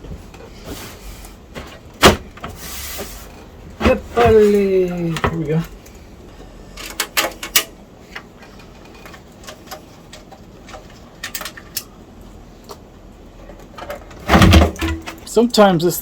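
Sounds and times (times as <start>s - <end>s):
computer parts clicking and knocking: 6.8s - 11.9s.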